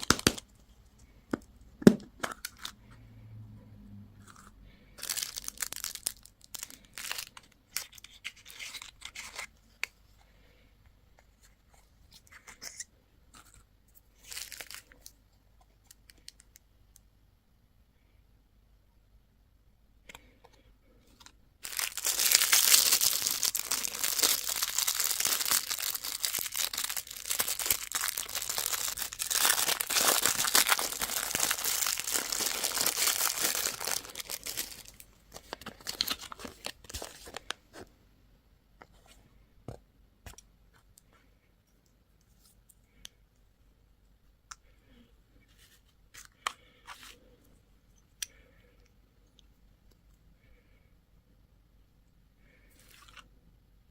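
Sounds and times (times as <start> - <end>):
candy wrapper crinkling: 0.0 - 0.5, 4.2 - 9.9, 12.1 - 16.6, 21.1 - 37.8.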